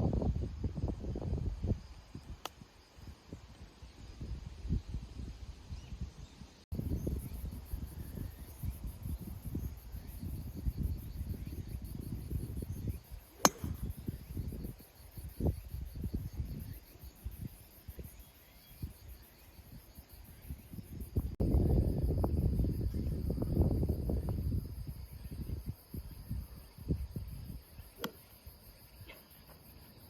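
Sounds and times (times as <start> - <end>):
wind buffeting microphone: 0.0 - 2.4, 3.3 - 18.1, 19.7 - 27.9
insects chirring: 0.1 - 30.0
golf club striking ball: 13.4 - 14.0.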